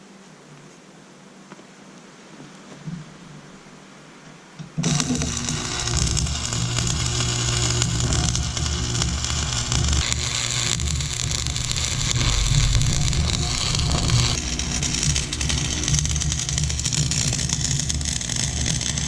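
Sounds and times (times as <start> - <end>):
low electrical hum: 0.0 - 19.0
welding arc crackling: 4.8 - 19.0.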